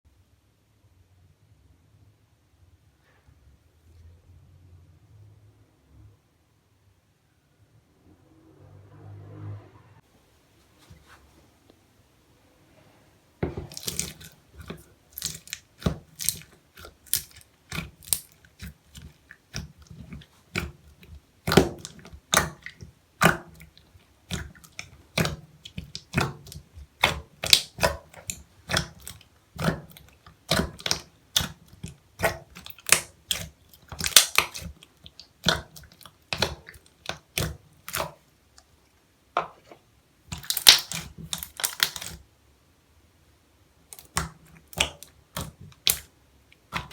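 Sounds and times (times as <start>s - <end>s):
slime squished by hand: 13.5s - 38.8s, 39.4s - 42.3s, 43.8s - 46.9s.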